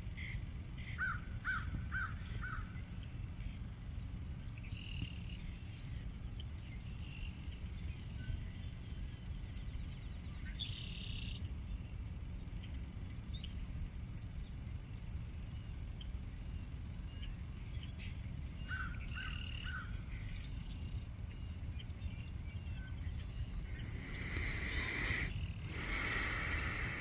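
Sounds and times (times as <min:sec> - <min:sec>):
steady low rumble: 0:00.0 - 0:27.0
animal chirps: 0:23.5 - 0:27.0
harsh buzzy animal calls: 0:23.8 - 0:27.0.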